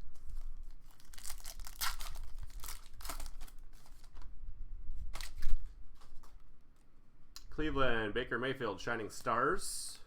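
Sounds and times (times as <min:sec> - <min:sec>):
cards rustling: 0:00.1 - 0:04.3
wrapper crinkling and tearing: 0:00.2 - 0:04.3.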